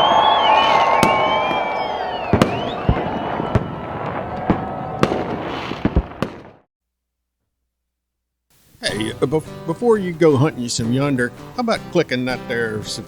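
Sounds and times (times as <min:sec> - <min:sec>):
whistling firework rockets: 0:00.0 - 0:06.6
firework bangs and pops: 0:00.5 - 0:06.7.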